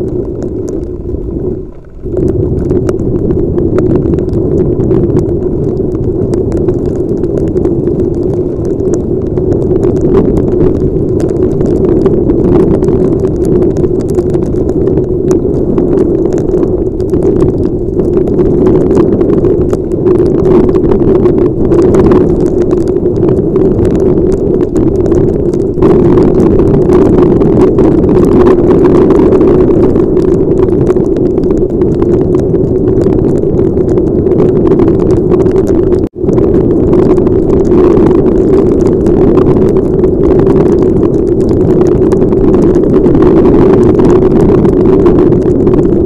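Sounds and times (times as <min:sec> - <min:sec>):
low hum: 0:00.0 - 0:25.0
raindrops ticking on helmet: 0:00.0 - 0:46.0
wind and vehicle noise: 0:00.0 - 0:46.0.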